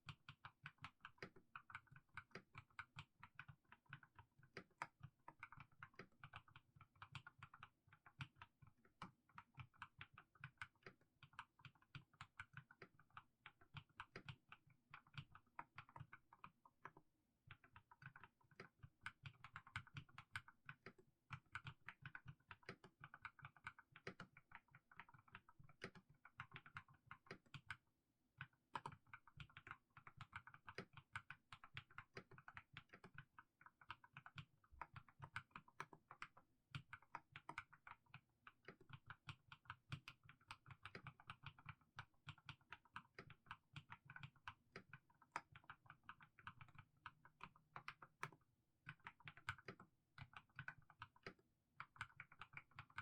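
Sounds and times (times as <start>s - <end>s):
mechanical keyboard typing: 17.6s - 27.8s, 28.4s - 53.0s.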